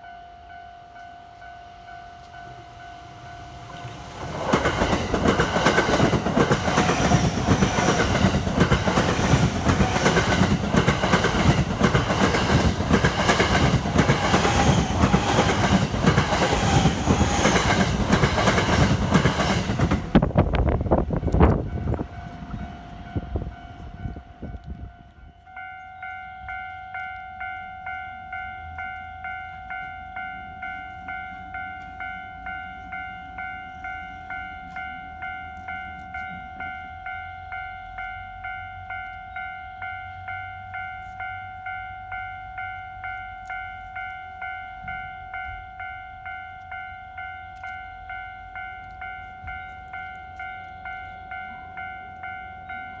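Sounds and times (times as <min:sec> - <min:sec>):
level crossing warning bell ringing: 0:00.0 - 0:53.0
train wheel noise: 0:03.1 - 0:25.6.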